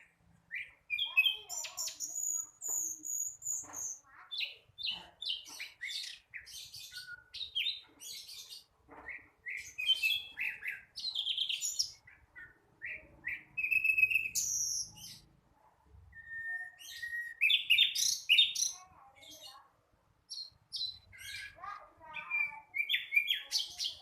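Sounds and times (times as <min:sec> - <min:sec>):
bird chirping and warbling: 0:00.0 - 0:15.3, 0:16.0 - 0:19.7, 0:20.3 - 0:24.0
bird steady whistle: 0:13.6 - 0:14.9, 0:16.2 - 0:17.9.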